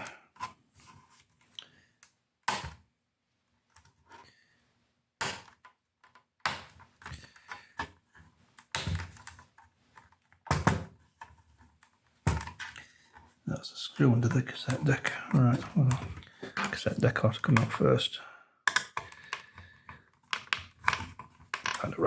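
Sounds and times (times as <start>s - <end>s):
plastic casing clicks and knocks: 18.7s - 21.9s.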